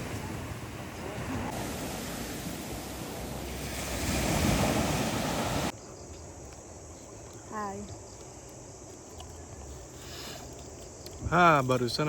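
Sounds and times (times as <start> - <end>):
ocean waves breaking: 0.0 - 5.7.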